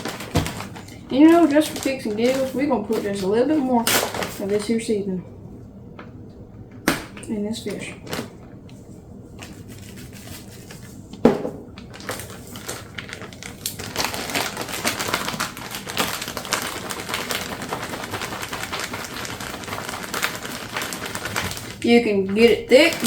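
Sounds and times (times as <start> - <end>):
plastic bag crinkling and rattling: 0.0 - 4.9, 7.8 - 8.5, 11.7 - 23.0.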